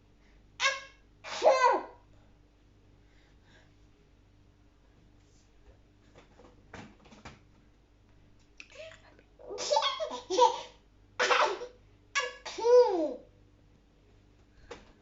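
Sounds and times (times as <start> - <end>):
young child laughing: 8.8 - 13.2.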